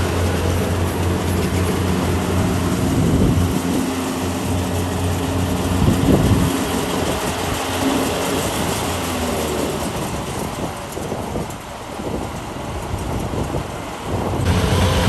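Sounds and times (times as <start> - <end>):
diesel engine low tone: 0.0 - 10.9, 14.1 - 15.0
mechanical clatter and rush: 0.0 - 15.0.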